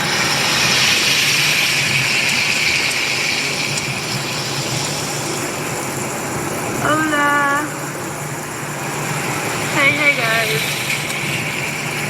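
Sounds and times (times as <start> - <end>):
rain falling: 0.0 - 12.0.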